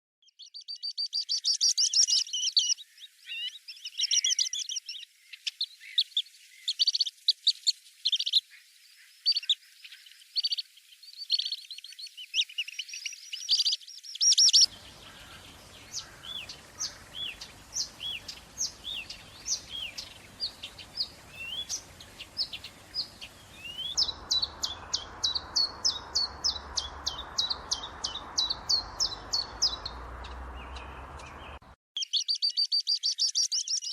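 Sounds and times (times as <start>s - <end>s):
small birds chirping: 0.2s - 33.9s
steady background hiss: 14.7s - 31.5s.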